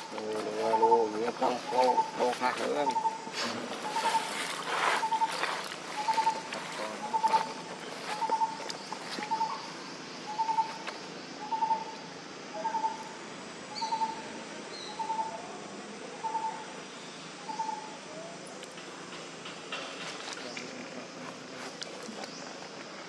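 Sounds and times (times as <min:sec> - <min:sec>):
bird trilled call: 0:00.0 - 0:13.1.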